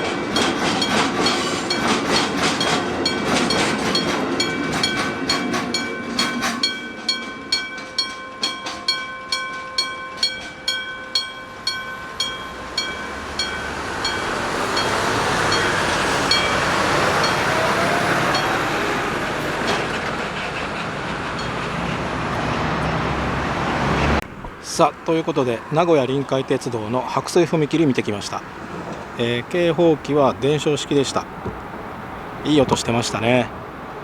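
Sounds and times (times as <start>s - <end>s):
railroad crossing gong bell: 0.0s - 20.3s, 21.0s - 23.2s
freight train rumbling: 0.0s - 25.0s, 26.5s - 34.0s
rushing noise: 10.2s - 24.4s.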